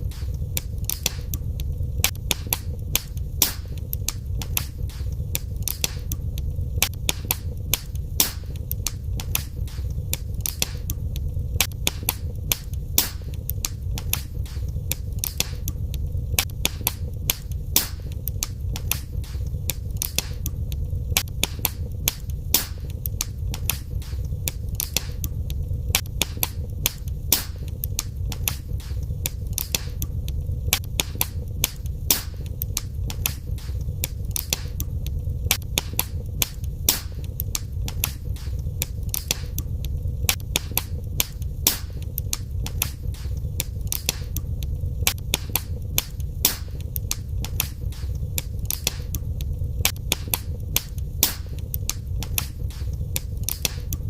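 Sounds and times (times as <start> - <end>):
fireplace fire crackling: 0.0 - 54.0.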